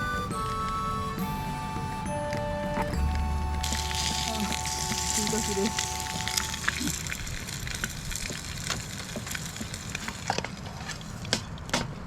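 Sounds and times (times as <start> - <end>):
dry twigs snapping: 3.0 - 11.4.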